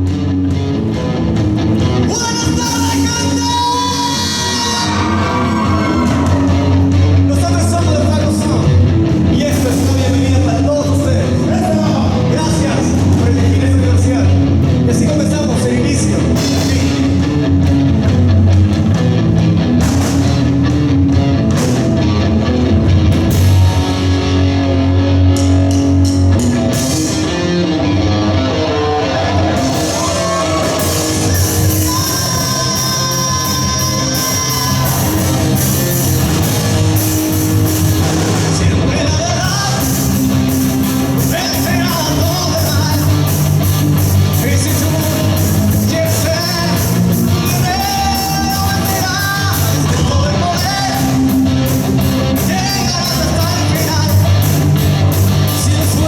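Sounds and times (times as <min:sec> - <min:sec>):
bass guitar: 0:00.0 - 0:56.0
drum kit: 0:00.0 - 0:56.0
electric guitar: 0:00.0 - 0:56.0
person singing: 0:02.0 - 0:08.7, 0:28.3 - 0:35.6, 0:44.3 - 0:51.3.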